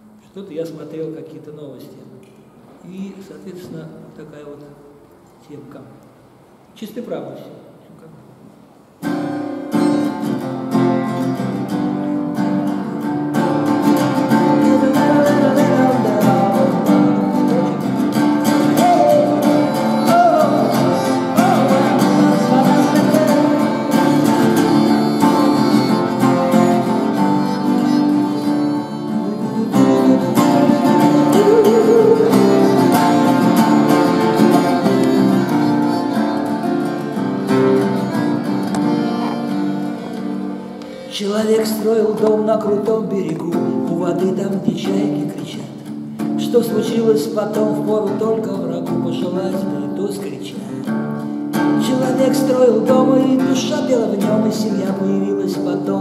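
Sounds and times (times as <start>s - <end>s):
acoustic guitar playing: 8.1s - 56.0s
wavering melody line: 14.0s - 40.8s.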